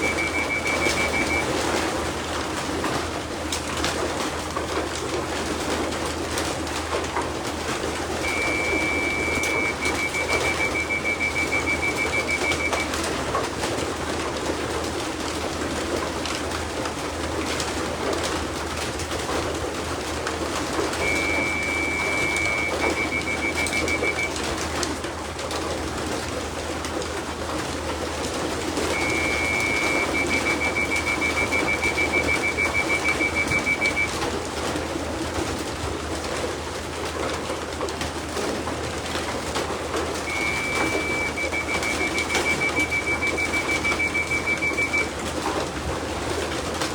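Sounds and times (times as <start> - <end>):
high electronic beeping: 0.0 - 1.5, 8.2 - 13.0, 21.0 - 24.3, 28.9 - 34.2, 40.3 - 45.1.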